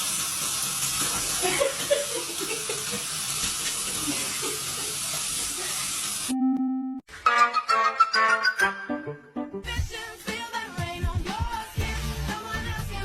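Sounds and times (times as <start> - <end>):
running water hissing from tap: 0.0 - 6.3
music: 6.3 - 13.0.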